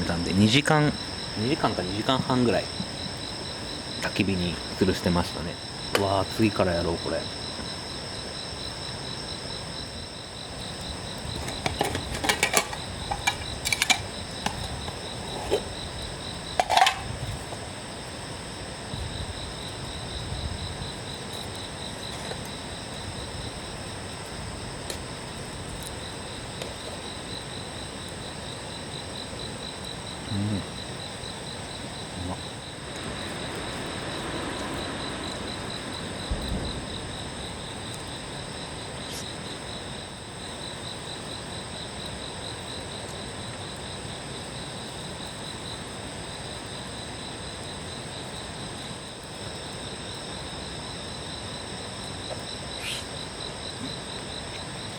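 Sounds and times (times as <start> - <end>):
high pulsing insect trill: 0.0 - 54.9
insects chorus: 0.0 - 54.9
sharp clicks and knocks: 11.3 - 15.7, 16.6 - 17.1.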